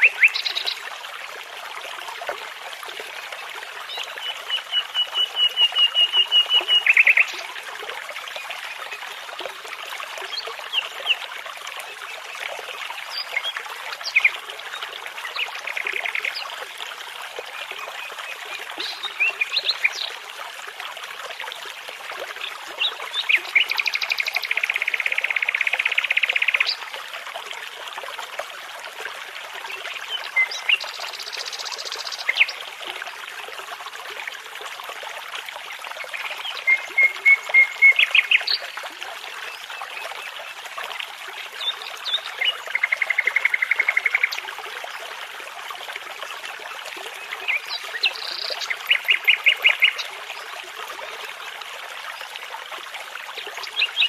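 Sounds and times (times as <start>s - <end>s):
babbling brook: 0.0s - 54.0s.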